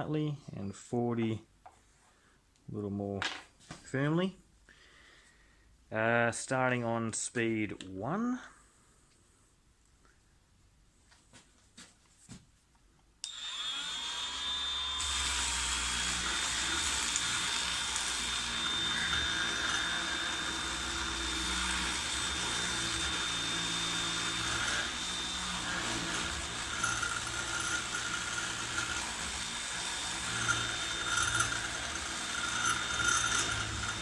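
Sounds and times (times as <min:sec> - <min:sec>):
sander motor whine: 0:13.3 - 0:34.0.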